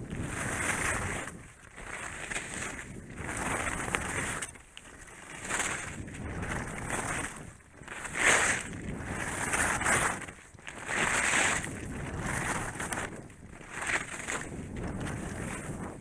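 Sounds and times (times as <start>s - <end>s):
wind on microphone: 0.0s - 4.6s, 5.2s - 16.0s
ski edges scraping snow: 0.2s - 16.0s.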